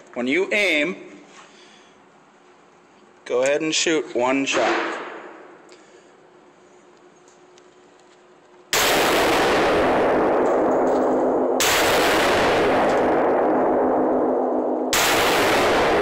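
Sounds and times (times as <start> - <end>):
rifle shots with ringing echo: 8.7 - 16.0.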